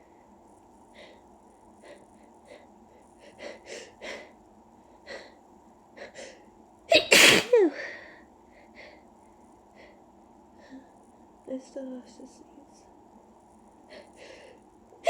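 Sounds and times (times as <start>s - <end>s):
person sneezing loudly: 6.9s - 7.7s.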